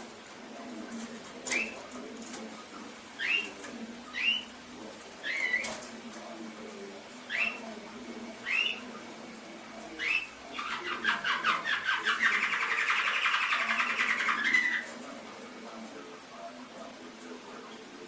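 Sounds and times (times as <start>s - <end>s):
canary singing: 1.5s - 1.9s, 3.1s - 5.9s, 7.2s - 15.1s.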